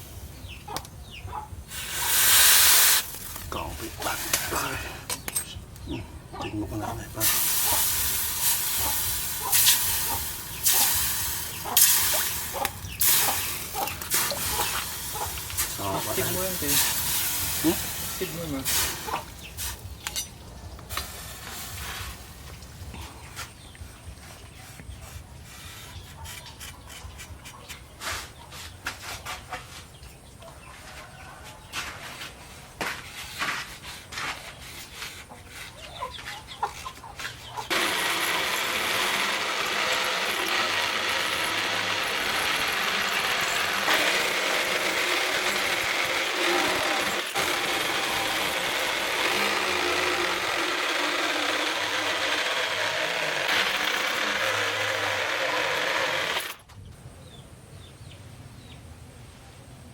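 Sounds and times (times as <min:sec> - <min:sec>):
power tool grinding steel: 0:01.7 - 0:05.5, 0:06.8 - 0:20.3, 0:37.7 - 0:56.6.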